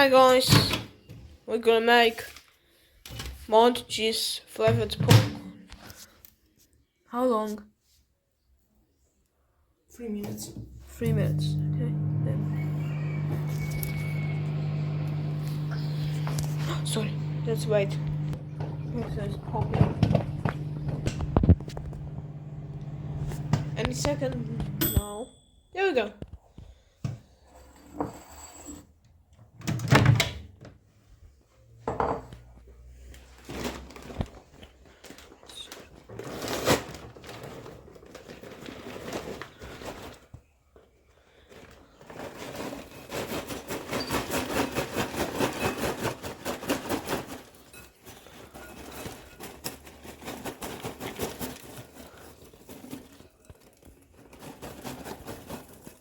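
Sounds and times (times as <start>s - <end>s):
popcorn bag crackling and rustling: 12.4s - 24.7s, 33.2s - 56.0s.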